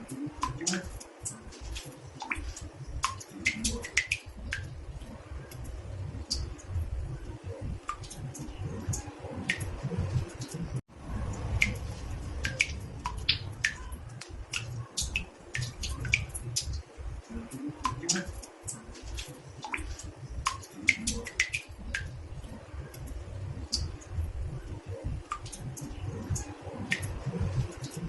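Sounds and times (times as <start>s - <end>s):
water drops plinking into bathtub: 0.1s - 28.0s
low rumble: 4.3s - 14.9s, 21.8s - 28.0s.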